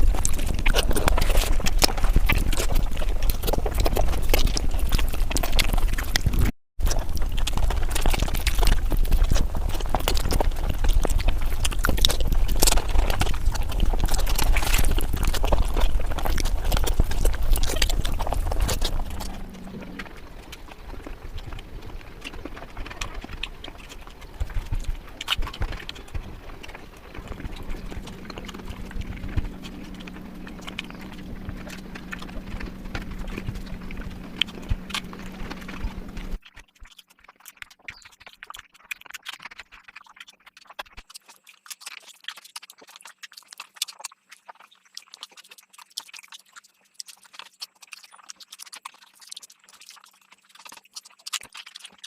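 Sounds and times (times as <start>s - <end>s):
faint steady hum: 0.0s - 36.4s
low rumble: 0.0s - 36.4s
wet chewing with lip-smacking: 0.0s - 52.0s.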